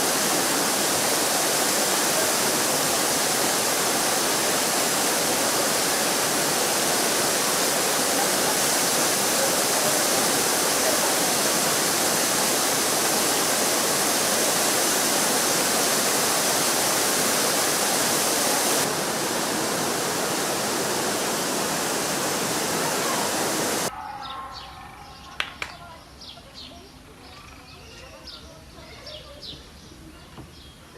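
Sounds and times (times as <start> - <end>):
waterfall rushing: 0.0 - 23.9.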